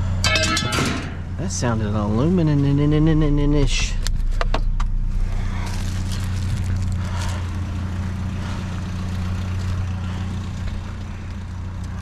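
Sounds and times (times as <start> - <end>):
vehicle engine idling: 0.0 - 12.0
metal scrap clinking: 0.2 - 1.2.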